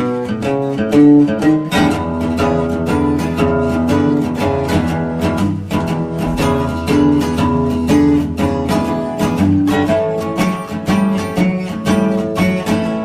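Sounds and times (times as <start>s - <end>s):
plucked acoustic guitar music: 0.0s - 13.0s
bass line: 6.0s - 8.1s.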